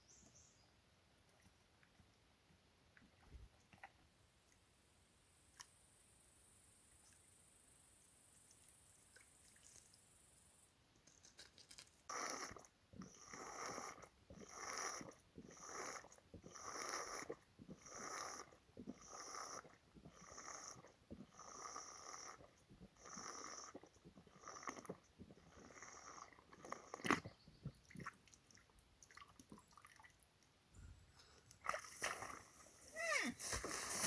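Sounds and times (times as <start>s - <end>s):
animal breathy snoring sounds: 12.1s - 27.3s.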